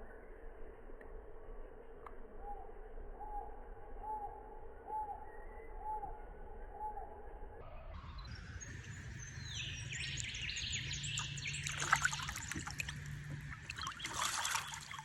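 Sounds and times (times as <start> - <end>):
birds chirping: 8.0 - 15.0
water splashing and trickling: 8.7 - 15.0.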